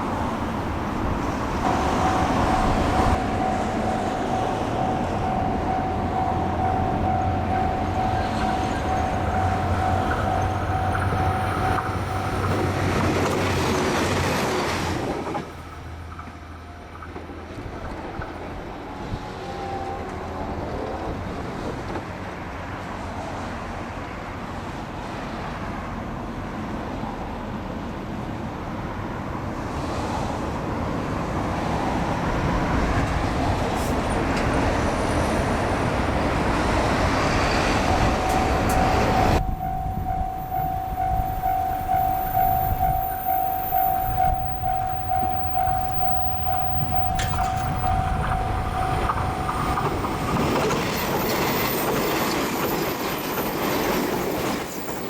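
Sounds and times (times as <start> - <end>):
train running past: 0.0 - 55.0
level crossing warning bell: 1.7 - 13.0, 37.4 - 52.1.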